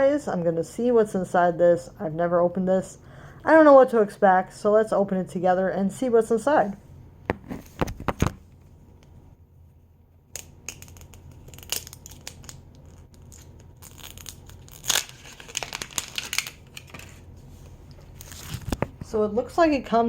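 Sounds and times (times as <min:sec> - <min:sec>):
packaging tearing and crinkling: 0:10.4 - 0:17.2.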